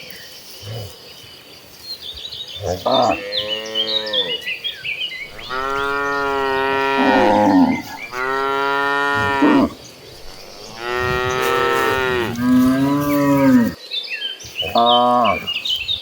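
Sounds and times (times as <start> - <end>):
bird chirps: 3.2 - 13.4
cattle mooing: 5.2 - 13.8.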